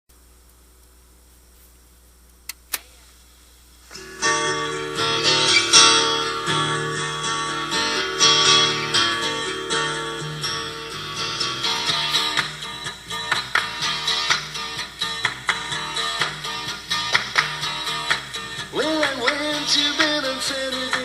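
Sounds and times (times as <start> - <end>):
short clicks: 2.3 - 3.0
guitar-led band playing: 3.9 - 21.0.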